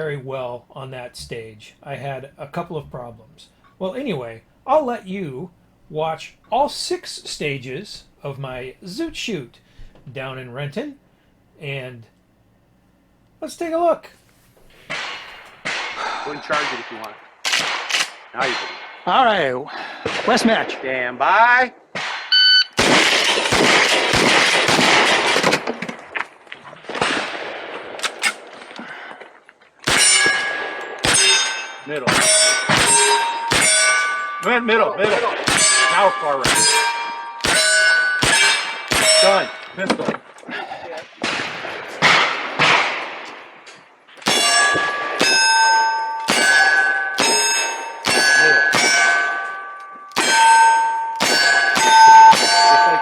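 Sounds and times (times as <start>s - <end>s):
rapid gunfire: 22.0s - 25.8s
steel target ringing: 29.9s - 40.0s, 44.2s - 53.0s.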